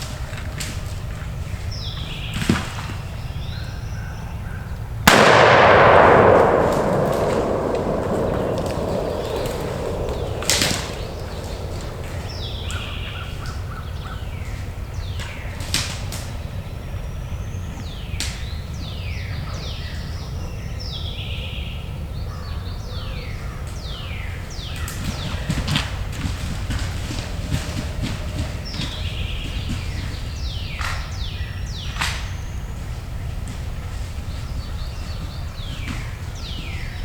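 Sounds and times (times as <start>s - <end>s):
sharp clicks: 5.1s - 12.8s
falling whistled bird notes: 5.1s - 13.6s
steady low rumble: 5.1s - 13.7s.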